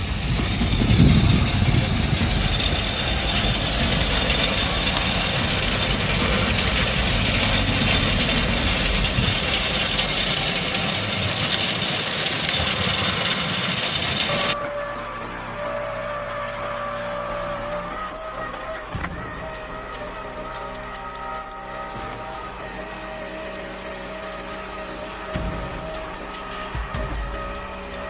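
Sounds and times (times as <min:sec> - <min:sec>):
heavy low thump: 0:00.0 - 0:11.5, 0:18.1 - 0:22.9, 0:24.2 - 0:28.0
heavy machine engine running: 0:00.0 - 0:28.0.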